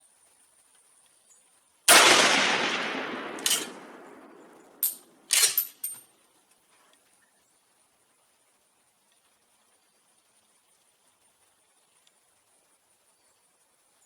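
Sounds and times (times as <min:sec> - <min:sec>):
rifle bolt clacking: 0:01.9 - 0:06.0
rifle shot: 0:01.9 - 0:06.0.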